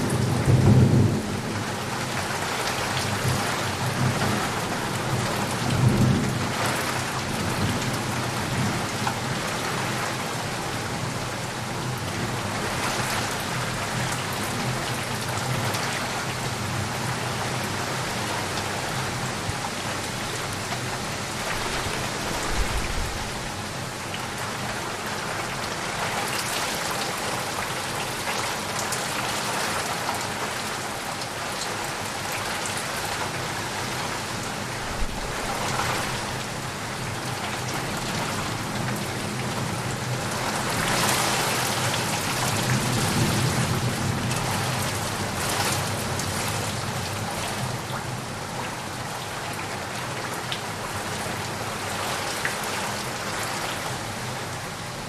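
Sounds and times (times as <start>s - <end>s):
heavy rain on leaves: 0.0s - 55.0s
thunder rumbling: 21.4s - 23.8s, 34.8s - 36.7s.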